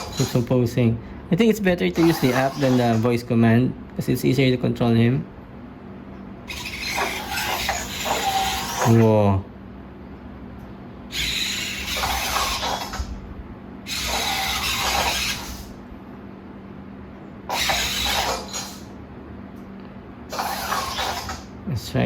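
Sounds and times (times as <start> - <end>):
robot servo motors whirring: 0.0 - 0.5, 2.0 - 3.1, 6.5 - 9.1, 11.1 - 13.2, 13.9 - 15.8, 17.5 - 18.9, 20.3 - 21.5.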